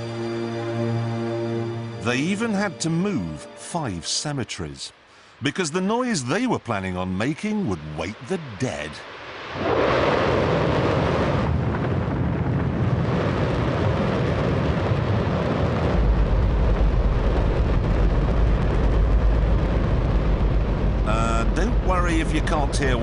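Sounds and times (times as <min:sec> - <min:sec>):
rocket engine roaring: 0:07.2 - 0:23.0.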